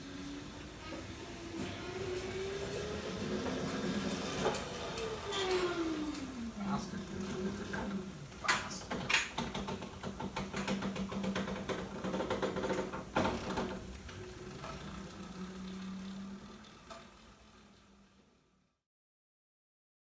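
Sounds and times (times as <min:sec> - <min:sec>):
electric motor hum: 0:00.0 - 0:08.4, 0:12.5 - 0:18.6
machine clicks and rattles: 0:07.2 - 0:17.3.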